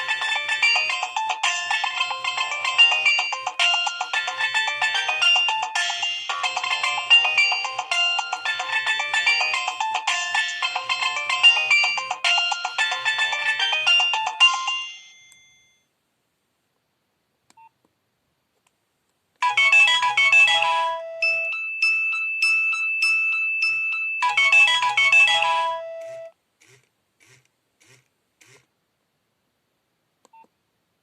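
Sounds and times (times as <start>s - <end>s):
mobile phone ringtone melody: 0.0s - 15.9s, 19.4s - 26.3s.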